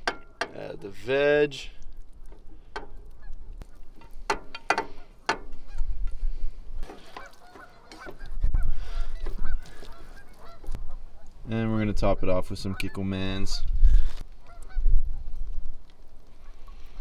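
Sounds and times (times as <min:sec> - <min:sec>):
wind rumbling on microphone: 0:01.7 - 0:07.1, 0:08.0 - 0:17.0
geese honking: 0:02.3 - 0:06.2, 0:06.8 - 0:11.5, 0:12.4 - 0:13.7, 0:14.4 - 0:14.9.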